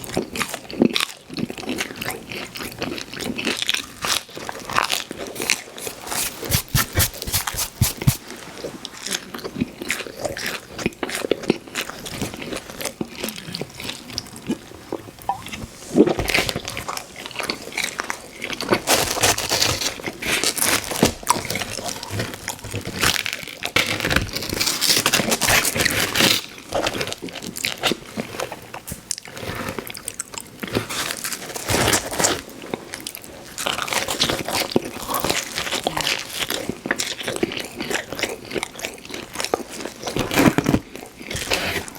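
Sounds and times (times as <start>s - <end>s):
pizza eating crunches and chewing: 16.4s - 41.9s.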